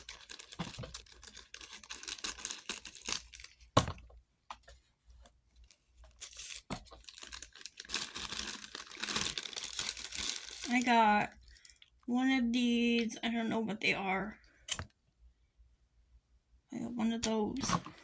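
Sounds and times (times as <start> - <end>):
snack bag crinkling: 0.0 - 3.8, 6.1 - 11.9.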